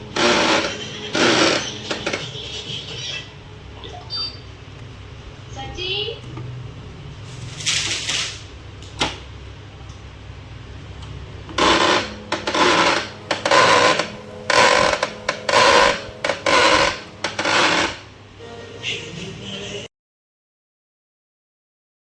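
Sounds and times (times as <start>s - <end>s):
printer gears grinding: 0.0s - 3.4s, 10.6s - 18.3s.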